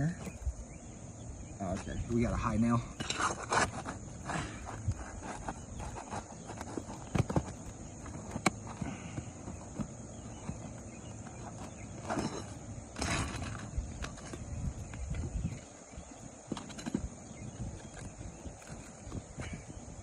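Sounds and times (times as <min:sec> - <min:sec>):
tool scraping shingles: 0:02.8 - 0:15.2.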